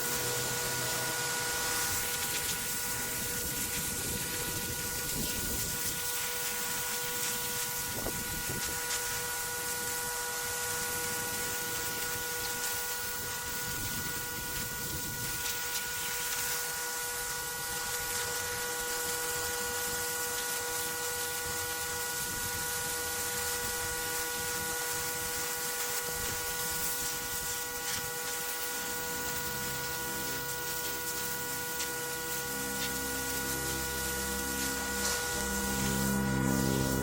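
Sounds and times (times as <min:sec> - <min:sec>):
pressure washer spraying: 0:00.0 - 0:37.0
low pulsing sound: 0:28.7 - 0:37.0.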